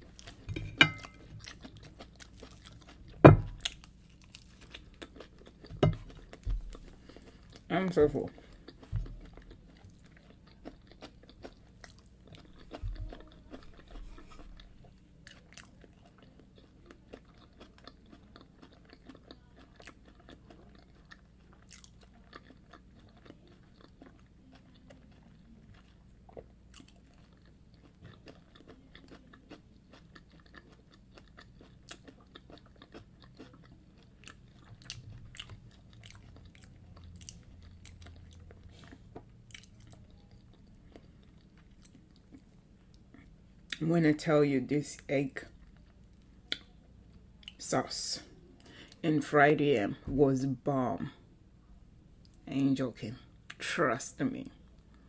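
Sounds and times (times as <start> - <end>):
close-miked chewing: 0.0 - 43.9.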